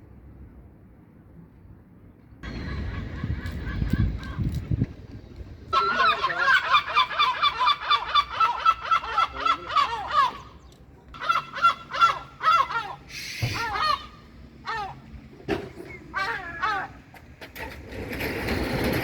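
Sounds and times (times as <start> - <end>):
gull calling: 2.4 - 4.6, 5.7 - 17.2.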